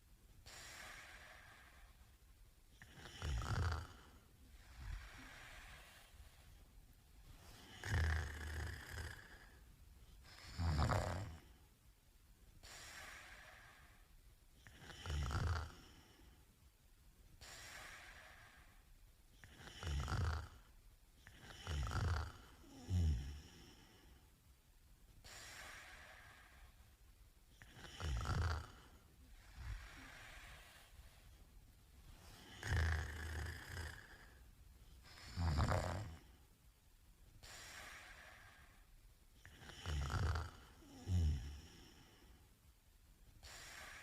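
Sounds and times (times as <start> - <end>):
soft breathy breaths: 0.0 - 44.0
man snoring: 2.8 - 4.2, 7.6 - 9.6, 10.4 - 11.5, 14.6 - 16.3, 19.4 - 24.1, 27.6 - 30.5, 32.3 - 34.4, 35.1 - 36.3, 39.4 - 42.2.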